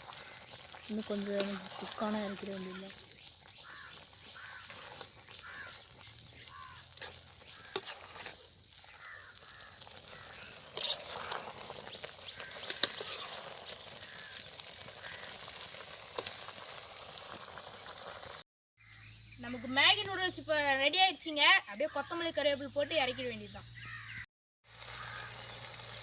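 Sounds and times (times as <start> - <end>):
high-pitched insect chorus: 0.0 - 26.0.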